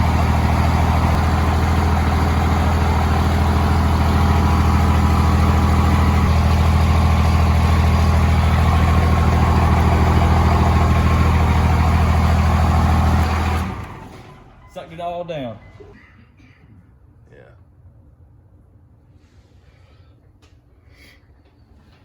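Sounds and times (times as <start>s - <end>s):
diesel engine idling: 0.0s - 16.0s.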